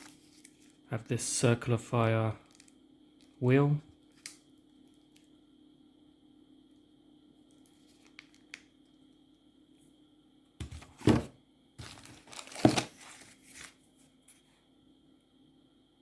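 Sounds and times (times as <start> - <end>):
packaging crinkling and rustling: 0.0 - 0.8, 2.4 - 5.3, 7.5 - 8.7, 11.8 - 13.9
faint steady hum: 0.0 - 16.0.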